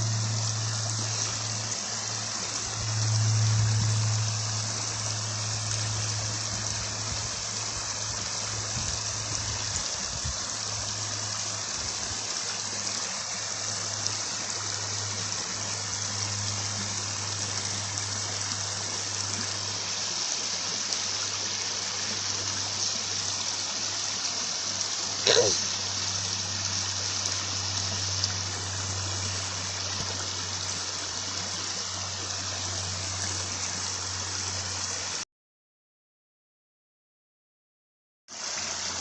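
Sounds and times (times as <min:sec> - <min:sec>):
low steady hum: 0:00.0 - 0:09.6
river water flowing: 0:00.0 - 0:35.2, 0:38.3 - 0:39.0.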